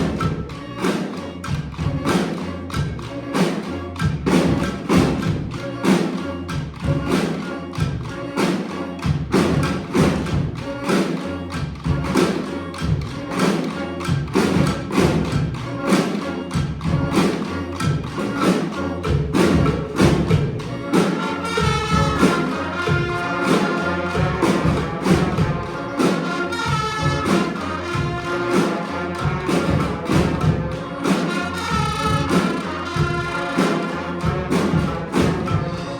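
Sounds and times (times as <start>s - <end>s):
brass street band playing: 0.0s - 35.9s
drums beating: 0.0s - 35.9s
horns holding melody notes: 0.0s - 35.9s
bass line: 14.0s - 35.9s.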